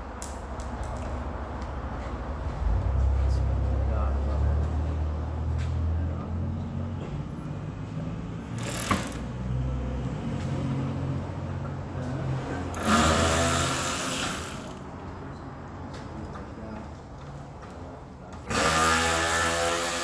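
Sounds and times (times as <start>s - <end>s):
cordless driver bursts: 8.6s - 9.3s, 12.8s - 14.9s, 18.5s - 20.0s.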